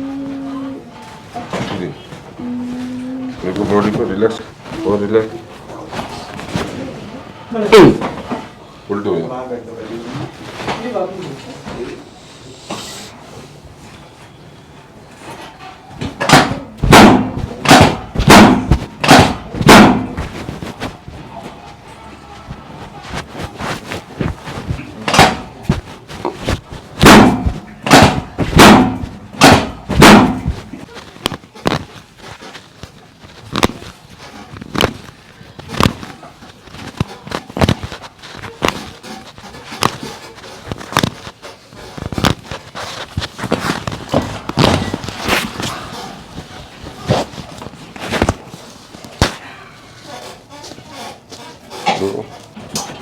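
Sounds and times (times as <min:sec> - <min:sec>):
heavy percussive thumps: 0:16.2 - 0:20.9, 0:24.2 - 0:30.8.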